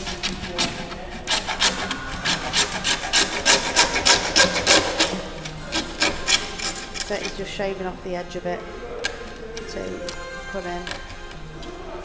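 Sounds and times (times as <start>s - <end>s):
handsaw rasping strokes: 0.0s - 7.7s.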